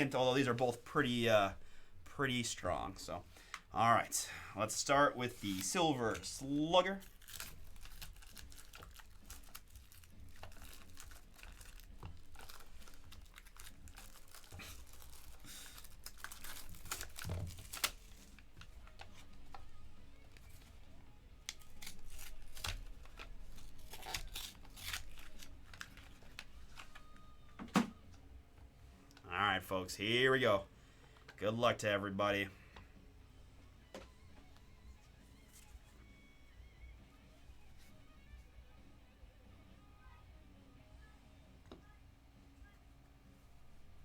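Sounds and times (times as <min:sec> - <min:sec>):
plastic wrap crinkling: 0:05.3 - 0:27.5.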